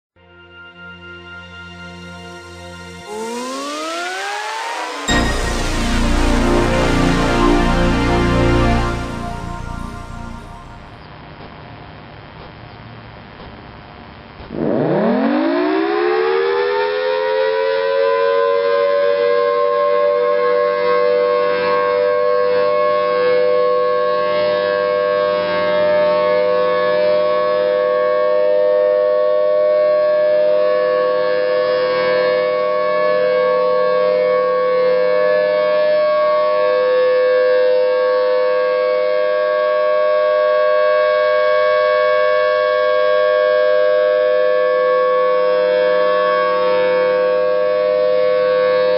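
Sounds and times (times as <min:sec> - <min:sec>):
tornado siren two-tone wail: 0:00.3 - 0:11.0, 0:15.0 - 0:48.9.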